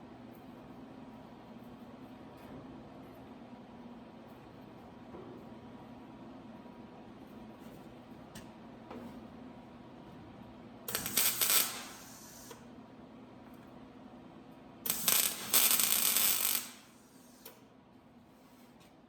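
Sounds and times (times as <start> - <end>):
metalworking tool on sheet metal: 14.9 - 17.6.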